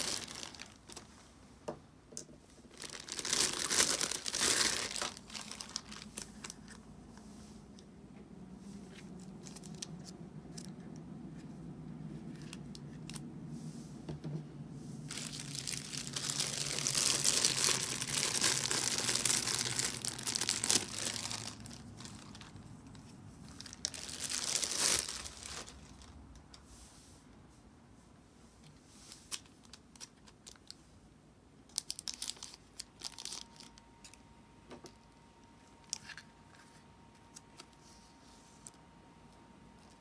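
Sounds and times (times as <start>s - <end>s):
packaging crinkling and tearing: 0.0s - 1.0s, 2.7s - 6.8s, 9.2s - 10.7s, 15.1s - 22.6s, 23.5s - 26.2s, 31.7s - 34.2s.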